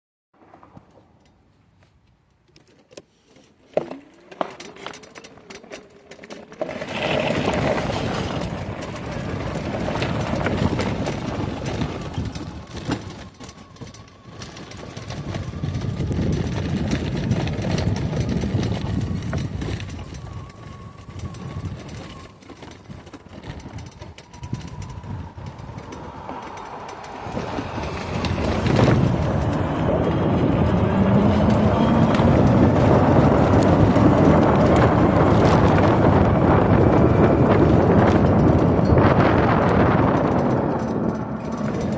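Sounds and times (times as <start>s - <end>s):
tyre and wind noise: 0.4s - 41.9s
electric motor whine: 13.7s - 41.9s.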